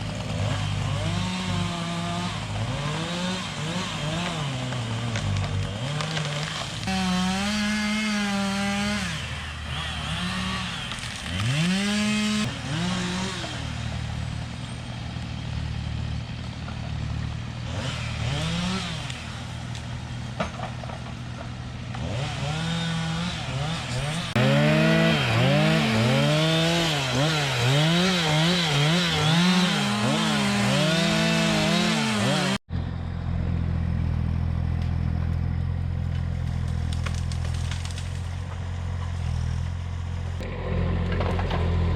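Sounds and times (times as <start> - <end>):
small engine revving: 0.0 - 14.4, 17.6 - 19.4, 21.9 - 32.6
low engine drone: 32.7 - 37.2, 40.0 - 41.9.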